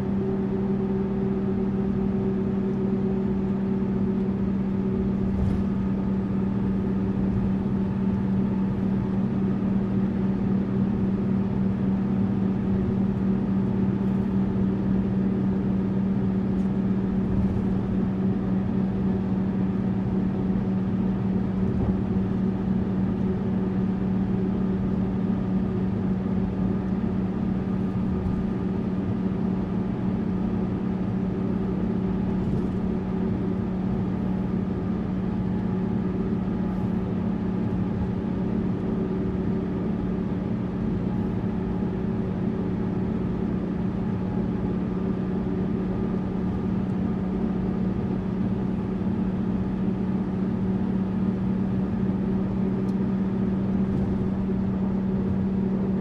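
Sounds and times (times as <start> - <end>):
bus engine droning: 0.0 - 56.0
road noise: 3.3 - 10.9, 12.6 - 19.3, 26.0 - 39.3, 53.4 - 55.9.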